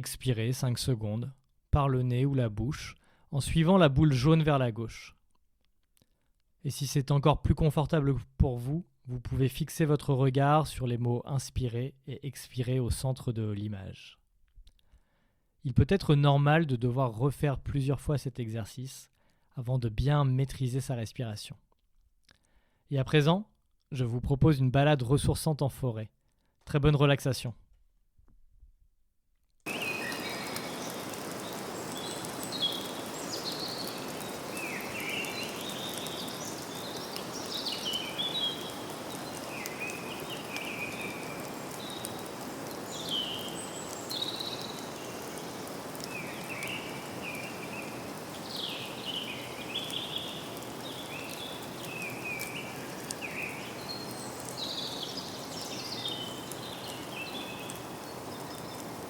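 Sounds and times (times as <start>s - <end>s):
birds chirping and calling: 29.7s - 42.2s
steady background hiss: 29.7s - 59.0s.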